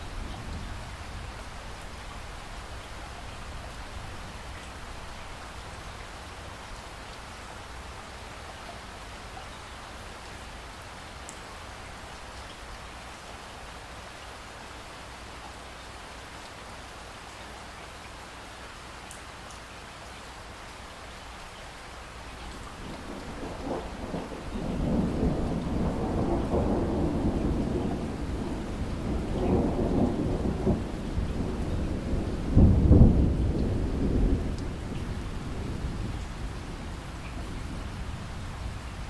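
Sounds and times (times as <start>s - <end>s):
steady rain: 0.0s - 39.0s
rolling thunder: 22.7s - 39.0s.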